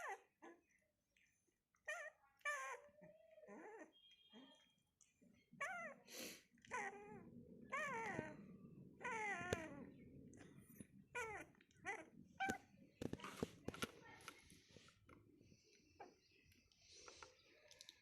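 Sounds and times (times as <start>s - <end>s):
puppies whimpering and squealing: 0.0s - 0.8s, 1.8s - 12.7s.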